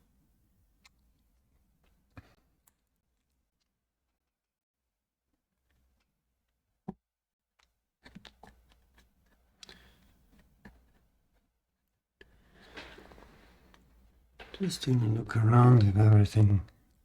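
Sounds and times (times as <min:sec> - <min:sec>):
rustling: 0:12.4 - 0:16.2.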